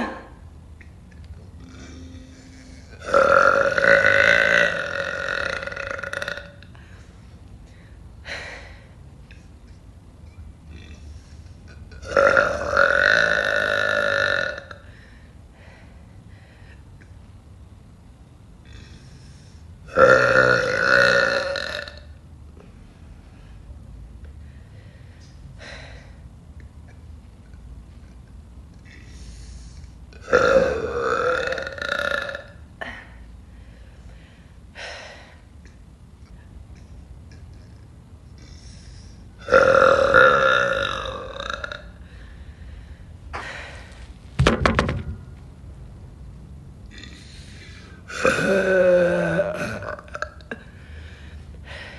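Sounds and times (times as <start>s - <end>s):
woman burping: 0.0s - 0.4s, 1.6s - 6.6s, 30.2s - 33.0s, 39.4s - 41.9s, 48.1s - 50.7s.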